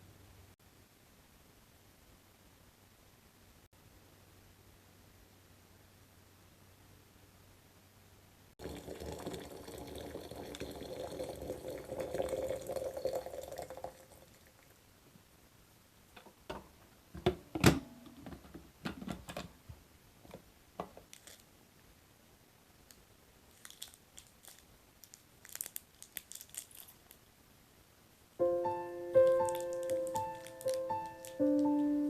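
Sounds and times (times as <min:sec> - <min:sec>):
tap water running into container: 0:08.6 - 0:14.4.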